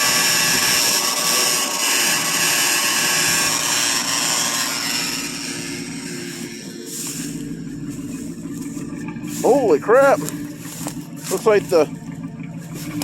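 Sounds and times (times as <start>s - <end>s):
car engine idling: 0.0s - 13.0s
power steering pump whine: 0.0s - 13.0s.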